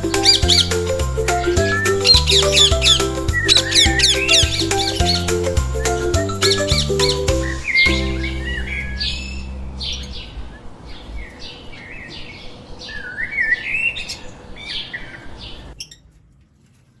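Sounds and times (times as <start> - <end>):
parrots chirping: 0.0 - 13.3.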